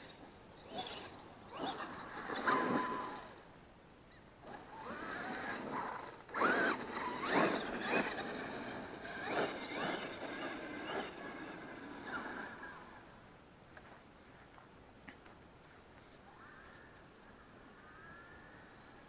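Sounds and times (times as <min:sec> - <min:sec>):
electric motor whining: 0:00.6 - 0:03.4, 0:04.4 - 0:13.1.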